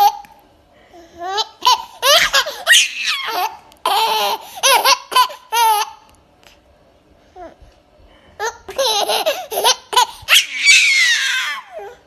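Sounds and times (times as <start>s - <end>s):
baby laughing: 1.2s - 6.1s, 8.4s - 11.8s.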